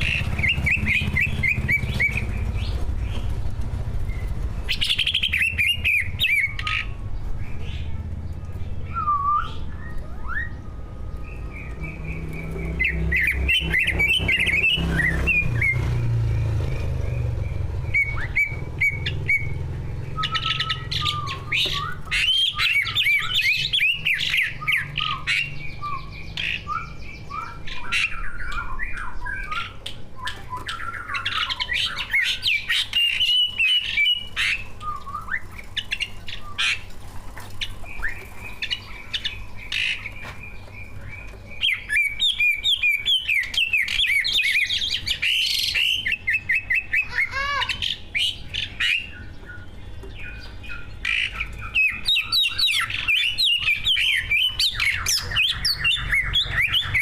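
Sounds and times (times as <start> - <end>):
birds singing with fast warbling: 0.0 - 57.0.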